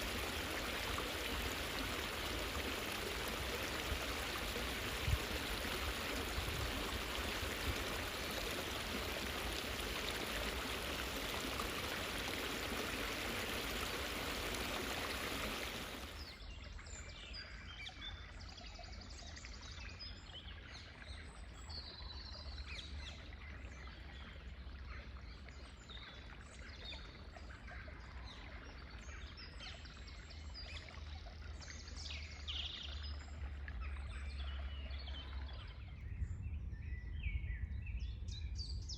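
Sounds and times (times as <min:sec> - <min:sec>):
stream water rushing: 0:00.0 - 0:16.3.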